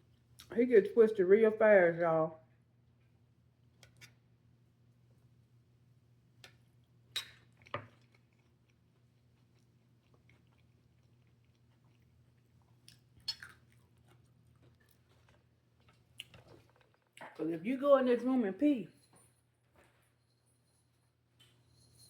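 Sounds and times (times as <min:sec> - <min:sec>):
person chewing: 0:06.4 - 0:17.2.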